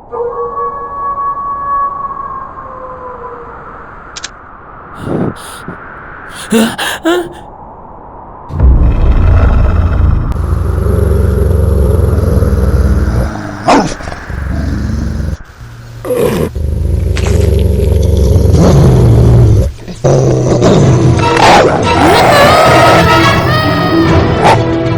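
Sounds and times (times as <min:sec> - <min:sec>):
loud low rumble: 0:08.5 - 0:15.4.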